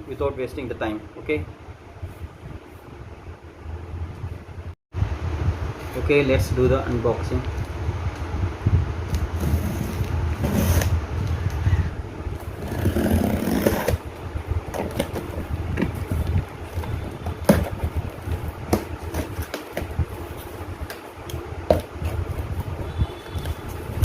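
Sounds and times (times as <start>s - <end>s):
cardboard box rustling: 14.8s - 20.5s.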